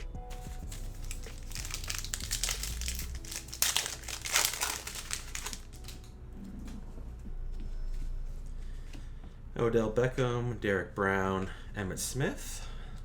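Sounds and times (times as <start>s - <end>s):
plastic wrapper crinkling and tearing: 0.3s - 6.2s.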